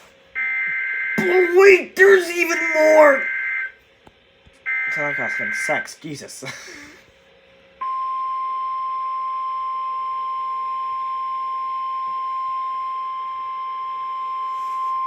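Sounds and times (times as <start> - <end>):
steady warning alarm tone: 0.4 - 3.7, 4.7 - 6.0.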